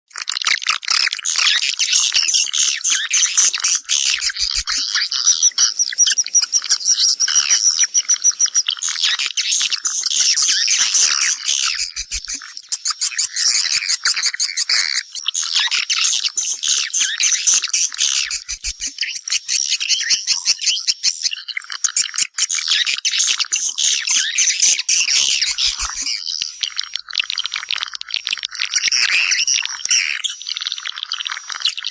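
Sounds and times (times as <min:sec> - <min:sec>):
swiftlets twittering: 0:01.2 - 0:12.4, 0:24.6 - 0:30.3.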